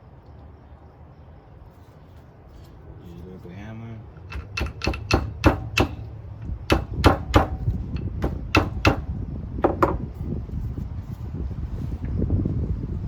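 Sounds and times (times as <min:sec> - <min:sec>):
hammer striking metal axle: 0:04.2 - 0:10.0.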